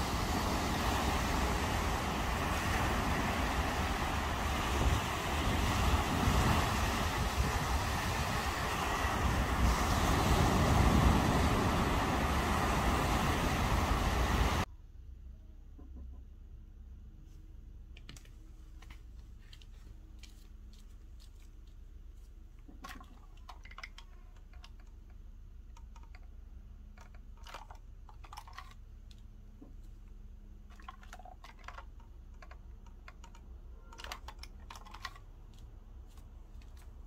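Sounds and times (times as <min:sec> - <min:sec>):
faint low hum: 0:14.6 - 0:34.5.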